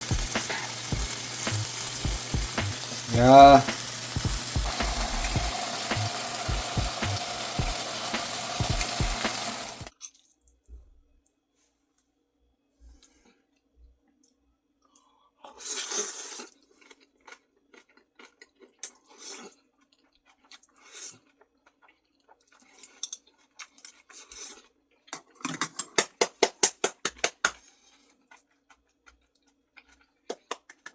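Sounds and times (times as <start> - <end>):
food sizzling in a pan: 0.0 - 9.9.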